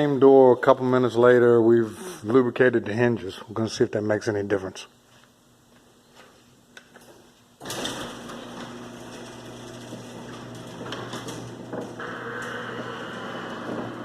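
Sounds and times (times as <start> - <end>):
mechanical hum and rattle: 5.0 - 14.0
garage door running: 7.6 - 14.0.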